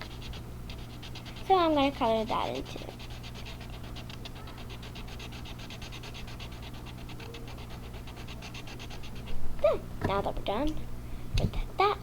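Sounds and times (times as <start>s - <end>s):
scribbling on paper: 0.0s - 9.4s.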